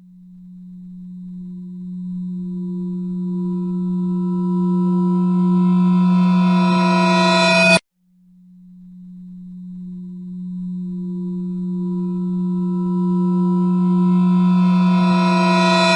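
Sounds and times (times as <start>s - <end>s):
low suspense drone: 0.2s - 7.8s, 8.8s - 15.9s
higher tones: 2.5s - 7.8s, 10.4s - 15.9s.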